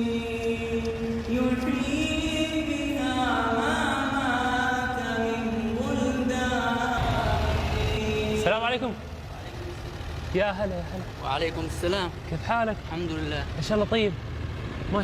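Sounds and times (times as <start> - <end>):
man singing unaccompanied: 0.0 - 9.1
low background rumble: 0.0 - 15.0.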